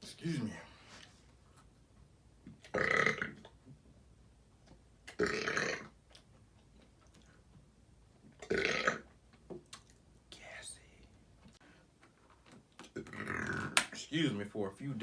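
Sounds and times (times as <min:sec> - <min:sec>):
man belching: 0:02.7 - 0:03.4, 0:05.2 - 0:05.9, 0:08.4 - 0:09.0, 0:12.9 - 0:13.8.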